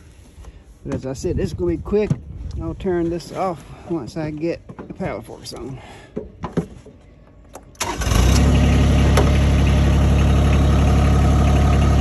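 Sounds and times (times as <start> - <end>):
tractor engine starting and idling: 7.6 - 12.0.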